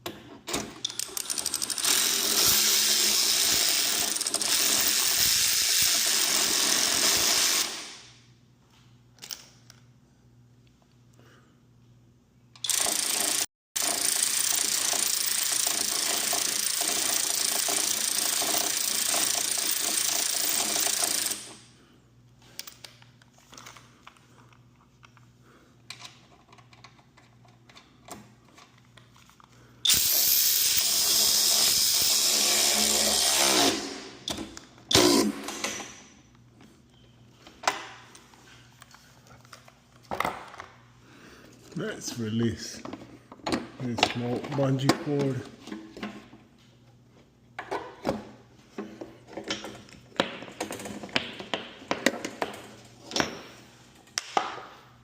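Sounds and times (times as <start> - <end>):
power tool motor running: 29.9 - 34.0.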